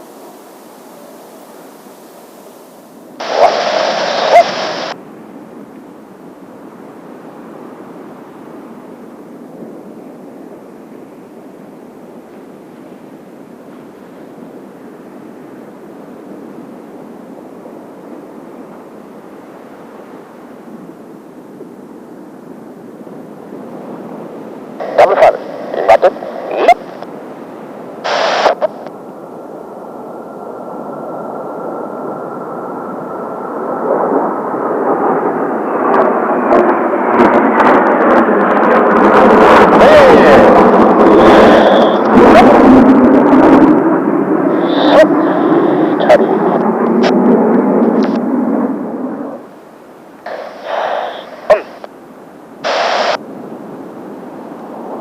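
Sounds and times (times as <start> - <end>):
jet engines rushing and whistling: 0.0 - 55.0
burst of hiss: 50.3 - 51.8, 52.6 - 53.2.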